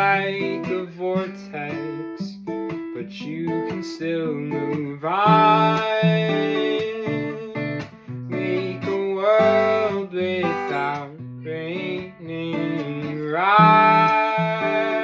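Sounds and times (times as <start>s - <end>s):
acoustic guitar playing: 0.0s - 15.0s.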